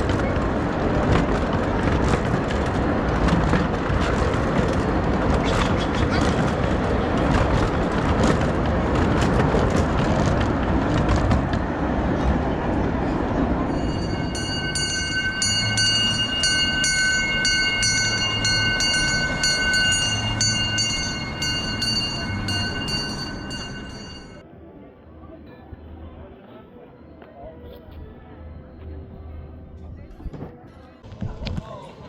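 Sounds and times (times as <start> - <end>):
miniature train clattering on track: 0.0 - 11.6.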